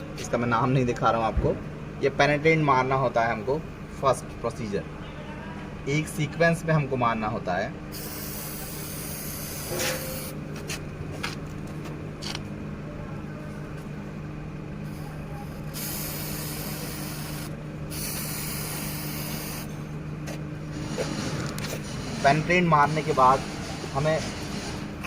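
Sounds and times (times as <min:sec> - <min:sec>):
steady low hum: 0:00.0 - 0:25.0
aerosol can spraying: 0:07.9 - 0:10.4, 0:15.7 - 0:19.7.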